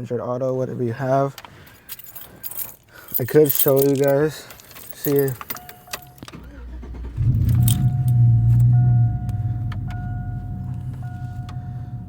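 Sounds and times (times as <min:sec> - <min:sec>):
truck engine starting and idling: 0:05.6 - 0:12.0
electronic warning tone: 0:07.8 - 0:12.0.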